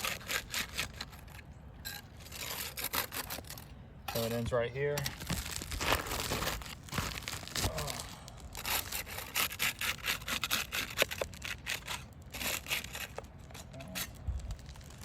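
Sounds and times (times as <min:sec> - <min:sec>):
roof shingle being pried up: 0:00.0 - 0:15.0.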